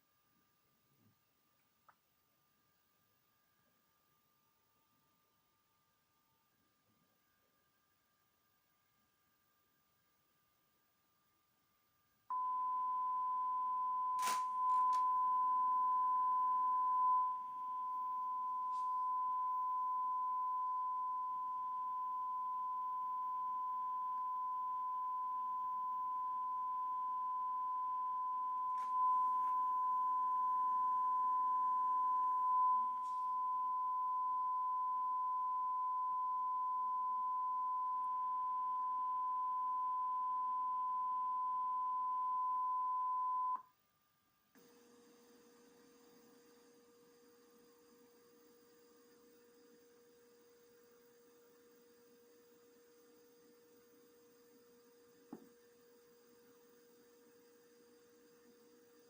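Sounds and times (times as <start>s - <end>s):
steady electronic beep tone: 12.3s - 43.6s.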